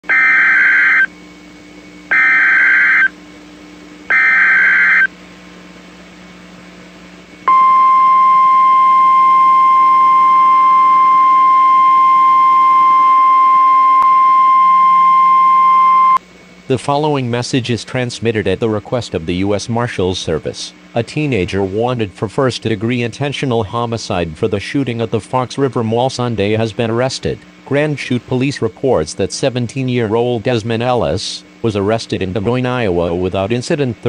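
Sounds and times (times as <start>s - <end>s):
digital header bursts: 0.0s - 1.1s, 2.1s - 3.1s, 4.1s - 5.1s
steady warning alarm tone: 0.0s - 1.2s, 2.1s - 3.2s, 4.1s - 5.2s, 7.5s - 16.2s.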